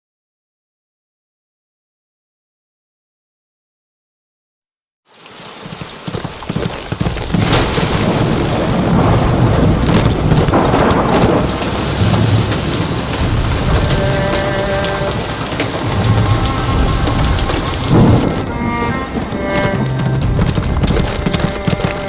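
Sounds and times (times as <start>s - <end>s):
heavy rain pouring: 5.1s - 22.0s
low rumble of thunder: 7.2s - 18.6s
faint music: 10.5s - 22.0s.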